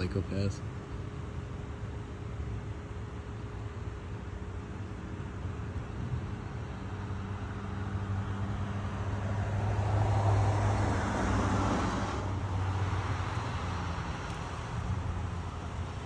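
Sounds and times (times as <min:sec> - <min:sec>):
steady low hum: 0:00.0 - 0:16.0
car passing: 0:06.8 - 0:16.0.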